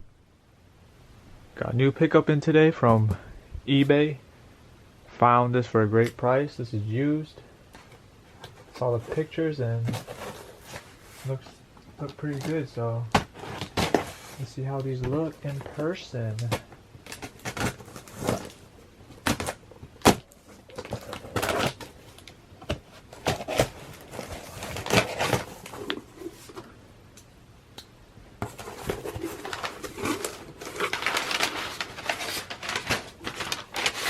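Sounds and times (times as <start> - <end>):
wrapping material crinkling: 28.5 - 34.0.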